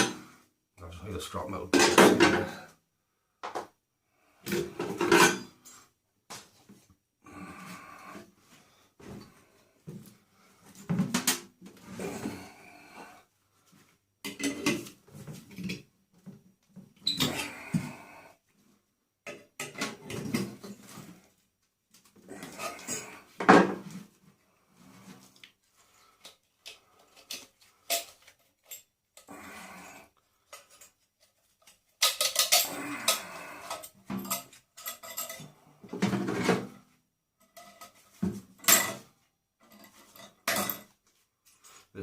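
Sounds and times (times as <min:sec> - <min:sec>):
metal parts clattering: 0:32.0 - 0:35.5.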